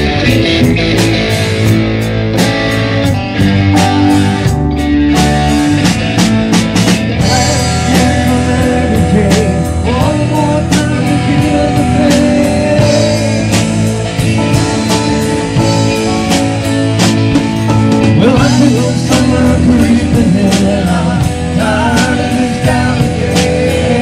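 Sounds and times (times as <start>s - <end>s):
bass guitar: 0.0s - 24.0s
drum kit beat: 0.0s - 24.0s
electric guitar: 0.0s - 24.0s
vocal lines: 7.1s - 17.0s, 18.0s - 24.0s.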